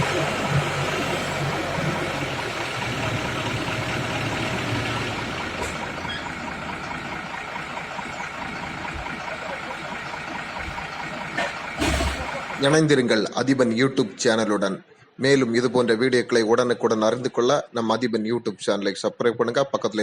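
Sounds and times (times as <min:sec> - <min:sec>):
diesel engine running: 0:00.0 - 0:13.2.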